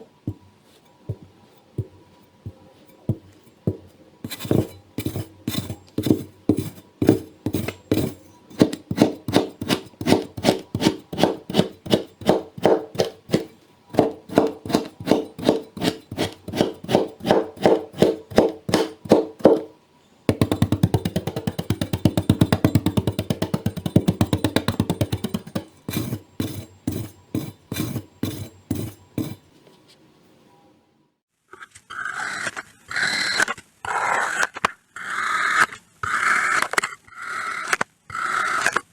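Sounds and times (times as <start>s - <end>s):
kinetic sand being cut: 4.3s - 19.6s, 20.4s - 29.4s.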